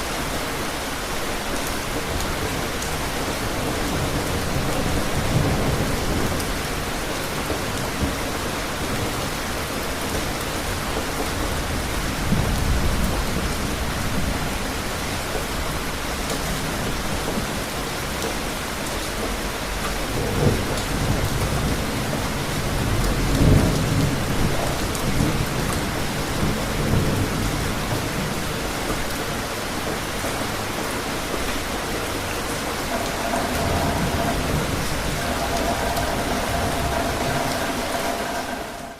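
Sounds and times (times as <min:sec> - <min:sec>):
heavy rain hissing: 0:29.4 - 0:38.9
low thunder rumbles: 0:32.9 - 0:38.9.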